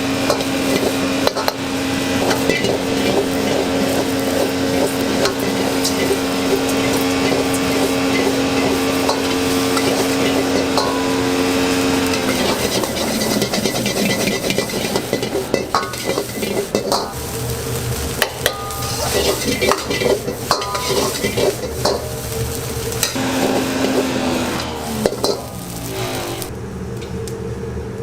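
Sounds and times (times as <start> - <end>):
rice sizzling in a pan: 0.0 - 26.6
metal spatula scraping a pan: 0.2 - 17.3, 18.2 - 26.5.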